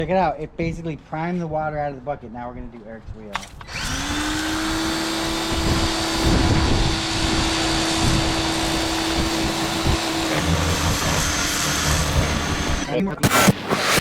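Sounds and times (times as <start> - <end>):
pressure washer motor whine: 3.6 - 14.0.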